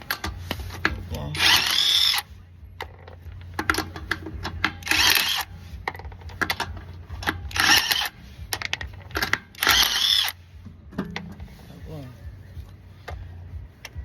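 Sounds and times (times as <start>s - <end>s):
impact wrench bursts: 1.3s - 2.3s, 4.7s - 5.5s, 6.6s - 8.1s, 9.2s - 10.4s.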